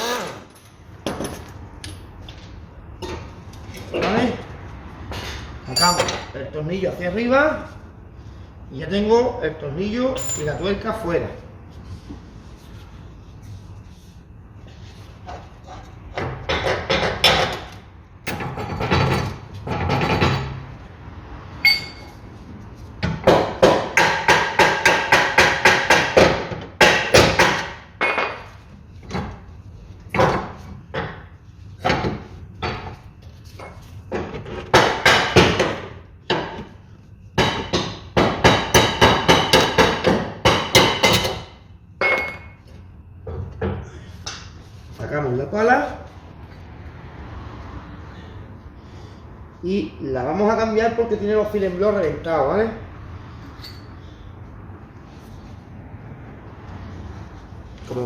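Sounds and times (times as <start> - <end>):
hammer striking steel: 5.7 - 6.3, 10.2 - 10.6, 21.6 - 22.1, 37.4 - 41.5.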